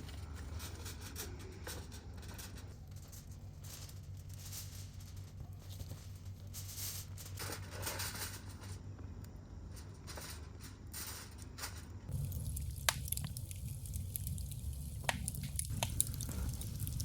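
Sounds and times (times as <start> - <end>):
fire low rumble: 12.1 - 17.0
wood fire pops and crackles: 12.1 - 17.0.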